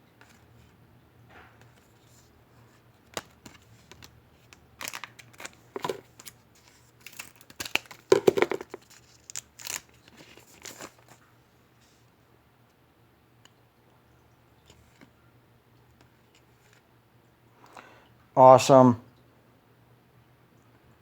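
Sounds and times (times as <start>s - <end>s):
wrapper tearing and crinkling: 3.2s - 11.2s.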